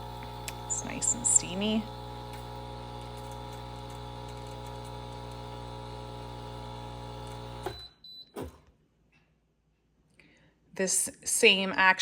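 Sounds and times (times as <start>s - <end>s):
espresso machine pump buzzing: 0.0s - 7.8s.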